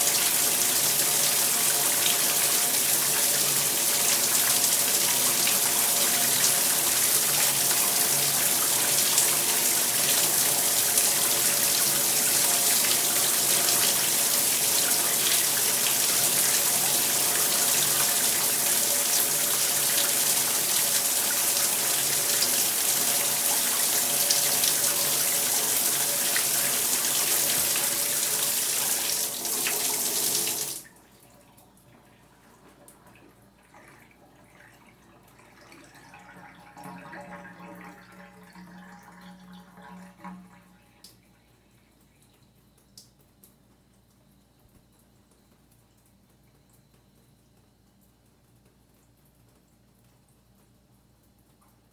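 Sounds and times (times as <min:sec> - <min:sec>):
shower spray running: 0:00.0 - 0:30.8
faint ringing hum: 0:30.8 - 0:49.4.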